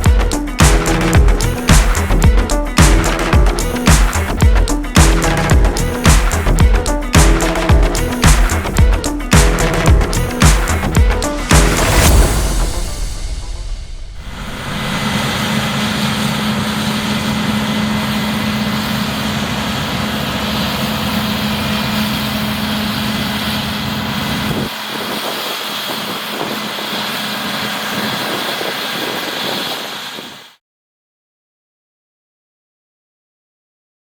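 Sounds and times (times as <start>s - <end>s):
rushing machine noise: 0.0s - 30.6s
combine harvester engine hum: 14.2s - 30.4s.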